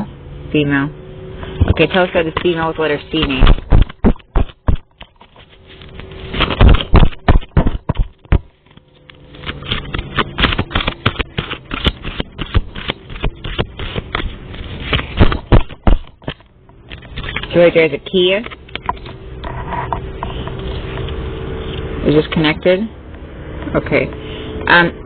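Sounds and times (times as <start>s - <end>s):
cards being shuffled: 1.4s - 17.6s.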